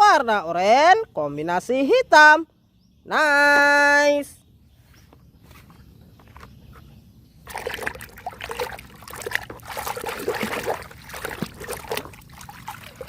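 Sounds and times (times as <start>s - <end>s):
water splashing and trickling: 7.4s - 13.0s.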